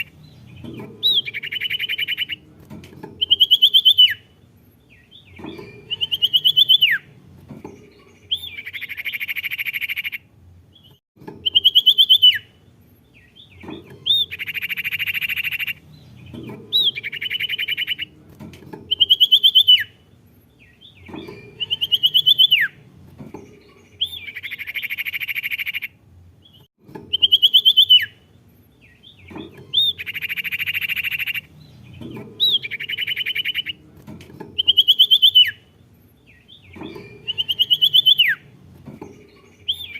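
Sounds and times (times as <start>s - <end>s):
trilled bird whistles: 27.1s - 28.2s, 34.6s - 35.6s.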